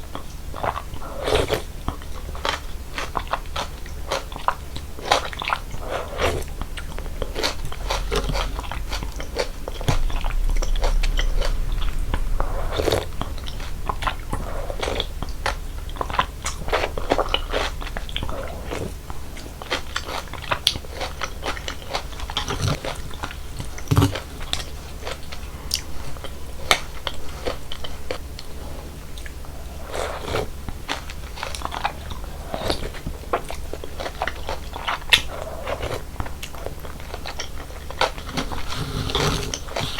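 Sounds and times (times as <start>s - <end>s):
chewing noodles with crunches: 0.0s - 39.9s.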